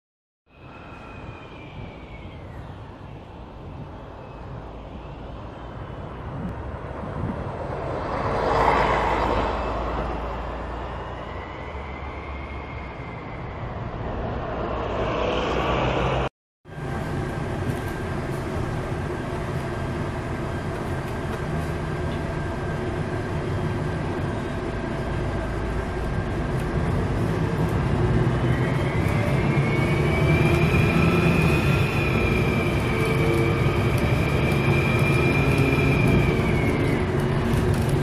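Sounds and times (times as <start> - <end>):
diesel bus engine rumble: 6.3 - 38.0
turbocharger whistle: 11.1 - 13.9, 28.0 - 37.2.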